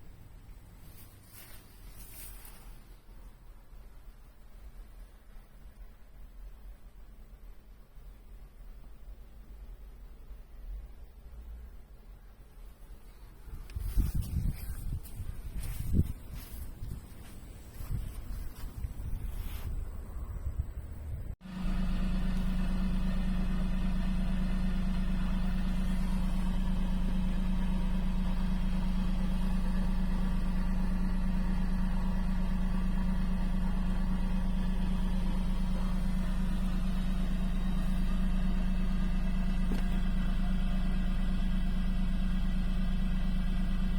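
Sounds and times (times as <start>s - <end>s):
truck engine humming: 12.7s - 43.9s
wind noise: 13.4s - 21.4s.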